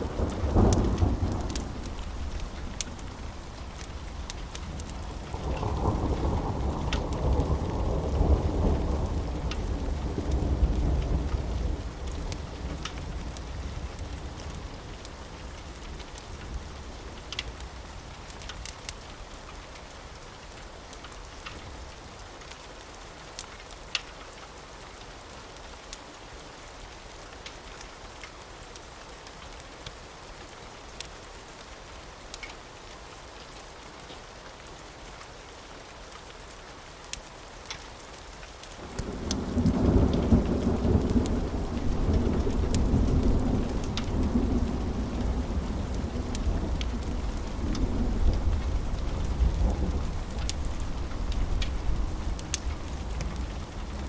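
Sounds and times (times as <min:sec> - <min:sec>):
steady rain: 0:00.0 - 0:54.0
rolling thunder: 0:38.8 - 0:54.0.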